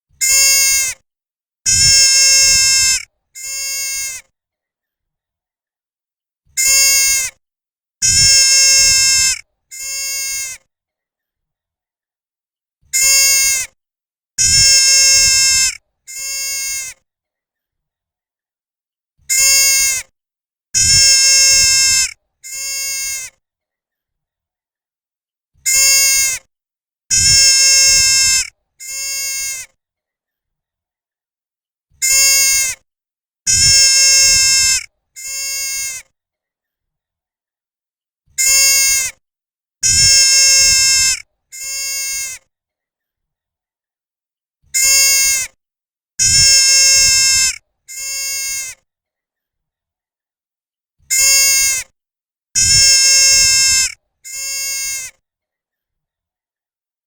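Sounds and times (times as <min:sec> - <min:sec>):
deer fawn bleating: 0:01.7 - 0:04.2, 0:08.0 - 0:10.6, 0:14.4 - 0:17.0, 0:20.8 - 0:23.4, 0:27.1 - 0:29.7, 0:33.5 - 0:36.1, 0:39.8 - 0:42.5, 0:46.2 - 0:48.8, 0:52.6 - 0:55.2.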